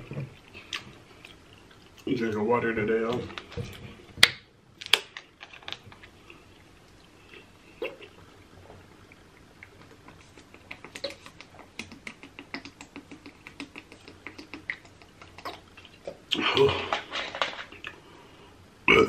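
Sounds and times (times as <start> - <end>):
wet chewing and smacking: 5.9 - 16.4.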